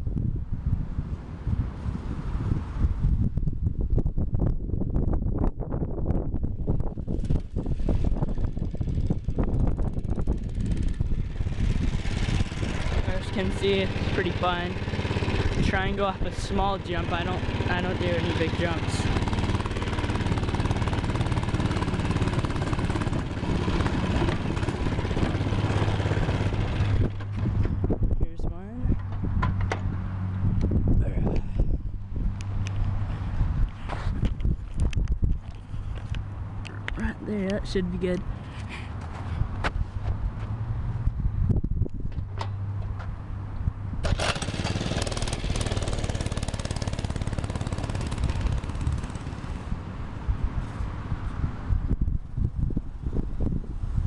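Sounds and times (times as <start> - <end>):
mini bike engine running: 7.1 - 27.5, 44.0 - 49.8.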